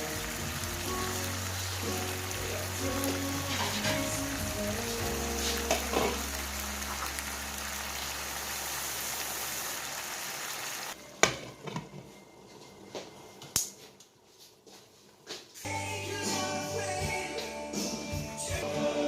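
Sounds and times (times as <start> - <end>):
food sizzling in hot oil: 0.0 - 11.0.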